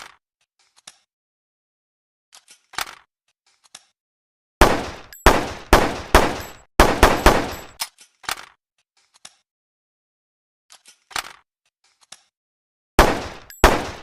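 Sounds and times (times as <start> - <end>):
handgun shots: 4.6 - 7.8, 13.0 - 14.0.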